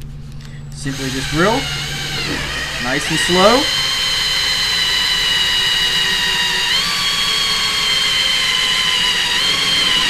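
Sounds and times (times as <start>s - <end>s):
electric drill cutting plastic: 0.8s - 10.0s.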